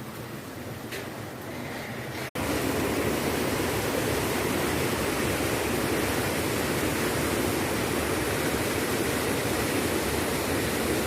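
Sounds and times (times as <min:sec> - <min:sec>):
waterfall rushing: 0:02.4 - 0:11.0.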